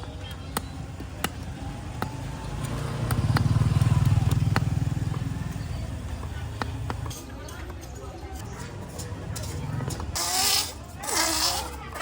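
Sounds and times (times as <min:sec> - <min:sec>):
motorbike engine passing by: 0:01.4 - 0:07.1.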